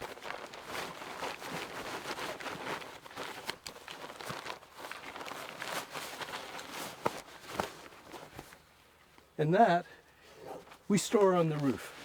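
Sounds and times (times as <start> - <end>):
fabric rustling and scuffing: 0.0 - 9.3.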